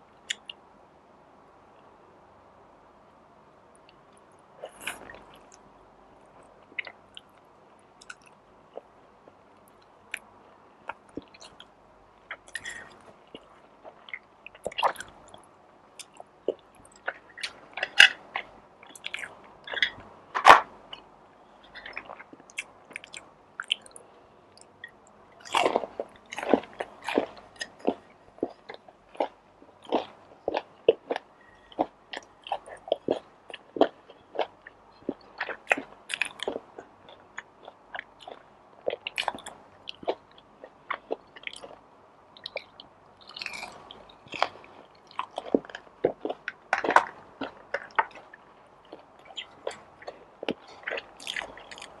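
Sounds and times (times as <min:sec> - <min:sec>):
person chewing and biting food: 0:12.3 - 0:15.4, 0:16.0 - 0:20.0, 0:25.4 - 0:41.8, 0:42.4 - 0:52.0.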